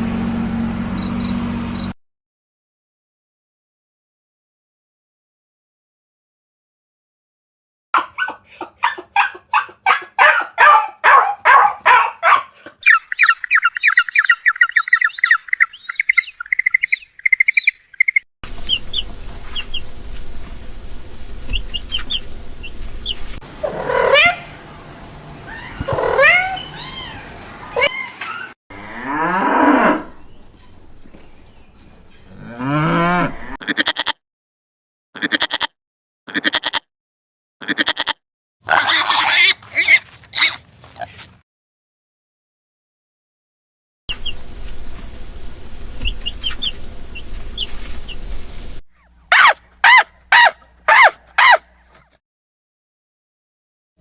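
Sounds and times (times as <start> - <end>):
rapid animal calls: 8.0 - 18.2, 38.7 - 41.3, 49.0 - 52.0
cattle mooing: 28.7 - 30.3, 32.3 - 33.6
short animal calls: 49.0 - 52.0
fast high trill: 49.3 - 51.6.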